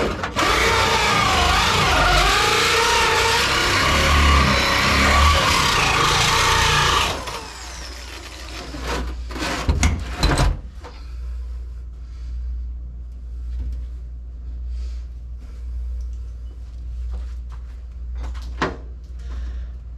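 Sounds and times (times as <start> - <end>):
power drill running: 0.0 - 9.0
low steady hum: 0.0 - 19.9.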